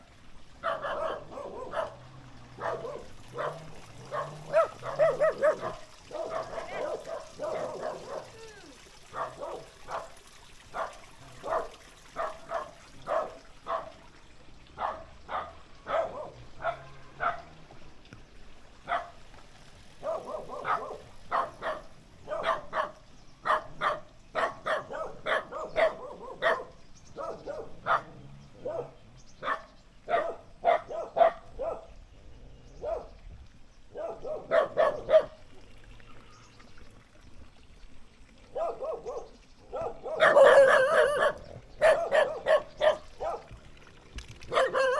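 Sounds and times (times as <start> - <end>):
dogs barking: 0.6 - 8.4, 9.1 - 14.1, 14.7 - 17.6, 18.8 - 19.2, 20.0 - 32.0, 32.8 - 33.2, 33.9 - 35.4, 38.5 - 43.6, 44.4 - 44.9.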